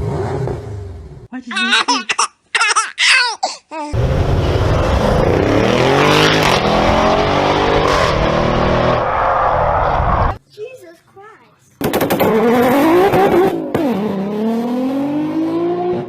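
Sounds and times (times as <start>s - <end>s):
car engine revving high: 4.0s - 10.4s, 11.9s - 16.0s.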